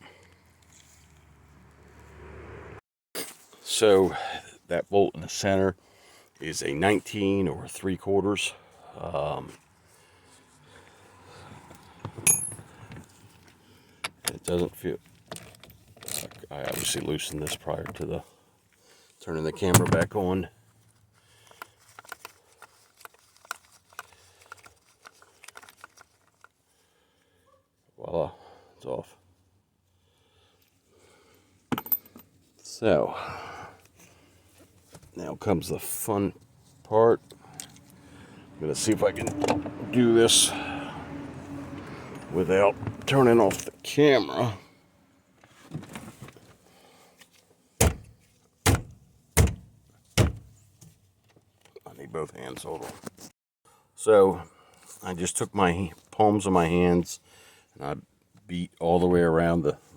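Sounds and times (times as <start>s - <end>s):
faint handling noise: 12.1s - 26.8s.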